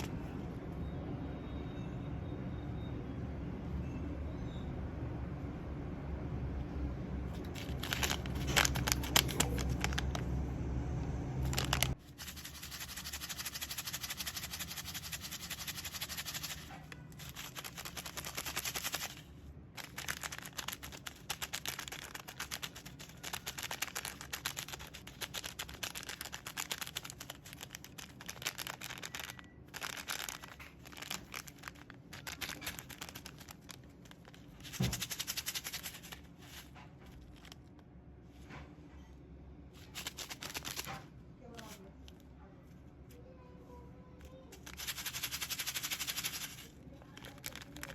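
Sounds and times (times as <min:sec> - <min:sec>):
popping candy crackling: 0:07.4 - 0:10.3, 0:11.4 - 0:36.2, 0:44.6 - 0:47.9.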